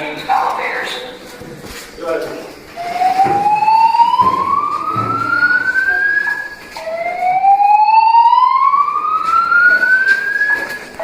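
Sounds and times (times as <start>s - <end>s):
fire alarm rising sweep tone: 2.8s - 11.0s.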